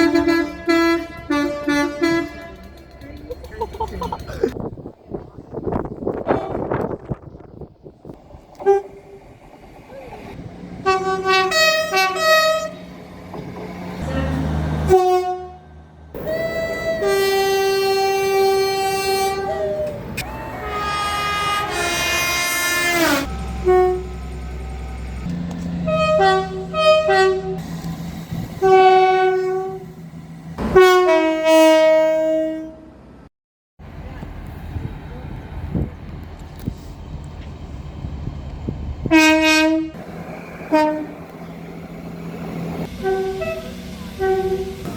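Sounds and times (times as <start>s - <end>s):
train horn blasts: 0.0s - 2.7s, 8.6s - 9.2s, 10.8s - 12.8s, 14.1s - 15.7s, 16.3s - 24.9s, 25.8s - 27.7s, 28.4s - 29.9s, 30.6s - 33.0s, 39.1s - 40.0s, 40.6s - 41.4s, 42.8s - 44.9s.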